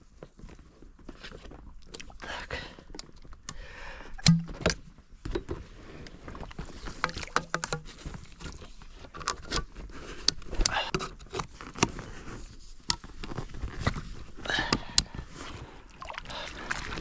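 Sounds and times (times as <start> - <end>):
water splashing and sloshing: 6.4 - 8.9, 15.5 - 17.0.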